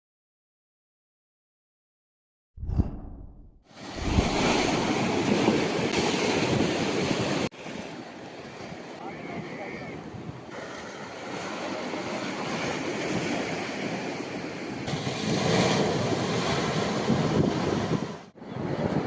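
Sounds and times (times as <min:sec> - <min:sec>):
wind buffeting microphone: 0:02.6 - 0:07.2, 0:15.8 - 0:19.0
sea waves washing on shore: 0:03.8 - 0:19.0.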